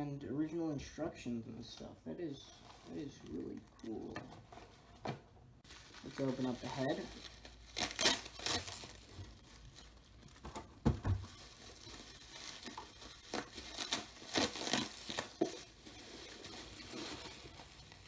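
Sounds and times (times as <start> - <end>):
packaging crinkling and tearing: 2.7 - 4.2, 5.6 - 18.0.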